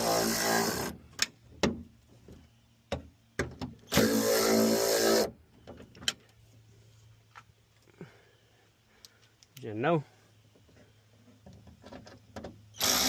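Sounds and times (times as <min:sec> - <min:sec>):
power tool motor whir: 0:00.0 - 0:01.0, 0:03.9 - 0:05.3, 0:12.8 - 0:13.0.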